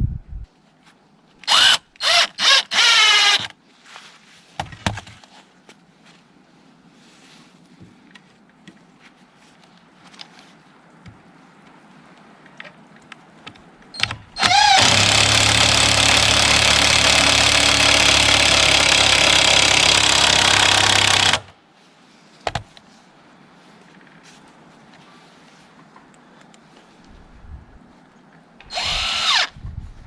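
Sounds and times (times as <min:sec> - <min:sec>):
motor-driven machine whining: 0:14.4 - 0:21.5, 0:28.7 - 0:29.5.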